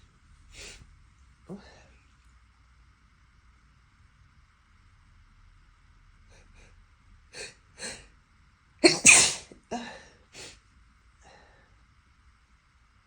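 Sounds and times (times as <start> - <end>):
person sneezing: 8.8 - 10.5.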